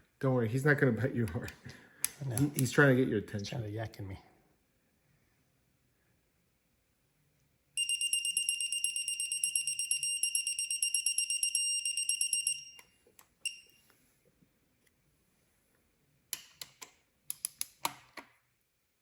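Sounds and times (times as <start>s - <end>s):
rapid high-pitched alarm beeping: 7.8s - 12.7s
short beep: 7.8s - 12.8s.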